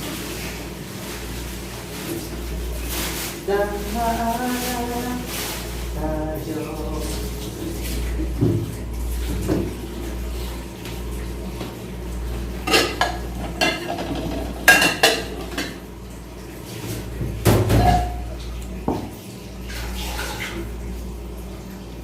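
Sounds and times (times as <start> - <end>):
utensils clinking against dishes: 12.6 - 15.8, 17.6 - 18.4.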